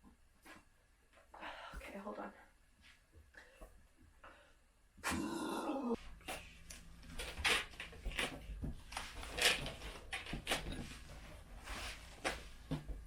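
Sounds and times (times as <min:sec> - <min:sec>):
objects knocking and rustling: 0:06.9 - 0:13.0.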